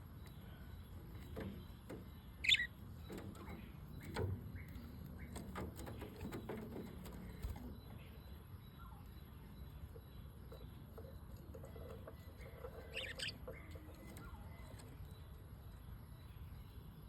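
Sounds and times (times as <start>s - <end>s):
parrots chirping: 2.4s - 2.7s, 12.4s - 13.6s.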